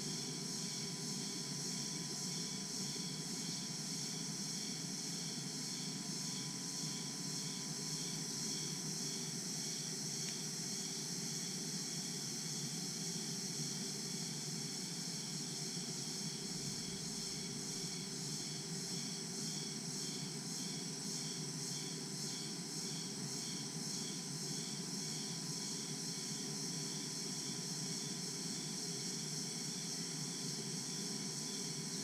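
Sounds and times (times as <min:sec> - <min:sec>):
crickets and insects buzzing: 0:00.0 - 0:32.0
faint pulsing insect layer: 0:00.0 - 0:32.0.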